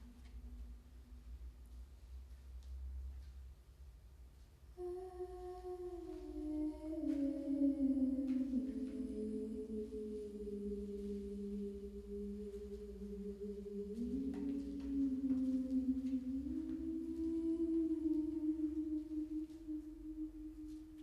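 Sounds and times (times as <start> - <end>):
droning music of held notes: 4.8 - 21.0.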